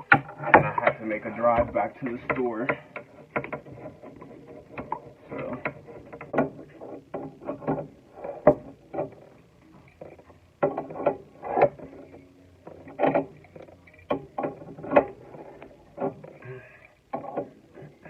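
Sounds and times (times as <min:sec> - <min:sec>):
hose nut knocking and clattering: 0:00.0 - 0:09.3.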